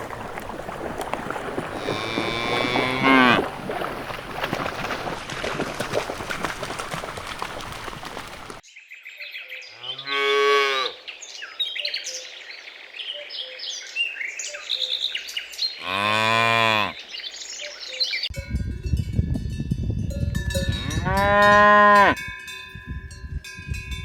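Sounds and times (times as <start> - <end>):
cows mooing: 1.7 - 3.5, 9.8 - 11.0, 15.8 - 17.0, 20.8 - 22.2.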